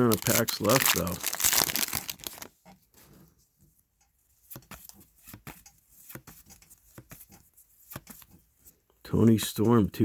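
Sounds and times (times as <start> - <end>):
trading cards tapping and sliding: 4.5 - 8.4.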